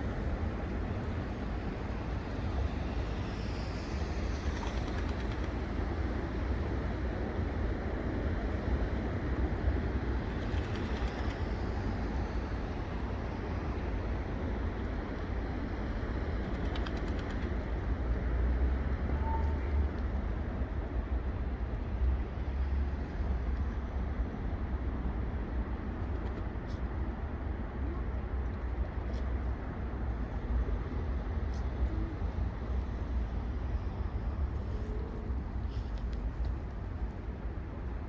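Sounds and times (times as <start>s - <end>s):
low outdoor rumble: 27.6s - 38.0s.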